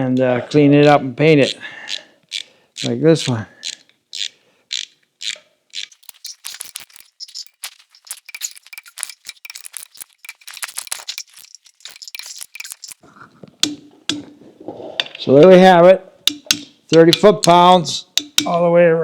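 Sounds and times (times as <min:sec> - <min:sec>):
ratchet wrench clicking: 0:01.9 - 0:13.0.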